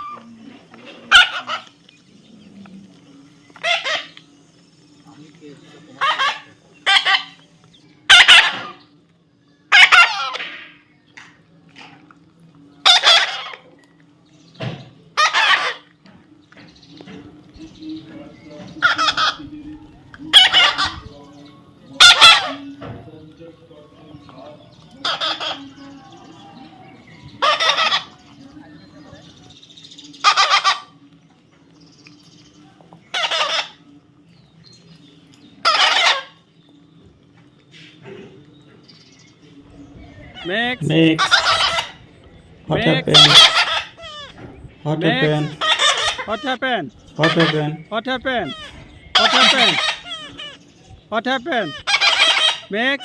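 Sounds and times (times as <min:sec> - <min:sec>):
harsh bird squawks: 0:00.0 - 0:00.4, 0:01.0 - 0:01.9, 0:03.5 - 0:04.2, 0:05.9 - 0:08.9, 0:09.7 - 0:10.9, 0:12.8 - 0:13.7, 0:15.1 - 0:16.0, 0:18.7 - 0:21.2, 0:21.9 - 0:22.8, 0:24.9 - 0:25.8, 0:27.2 - 0:28.4, 0:30.0 - 0:31.0, 0:33.0 - 0:33.9, 0:35.6 - 0:36.6, 0:40.2 - 0:53.0.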